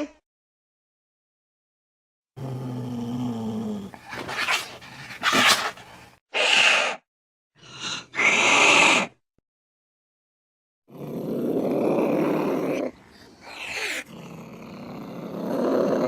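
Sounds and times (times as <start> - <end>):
cat growling: 2.4 - 6.0, 10.9 - 16.0
cat hissing: 3.9 - 7.0, 7.8 - 9.2, 12.7 - 14.1.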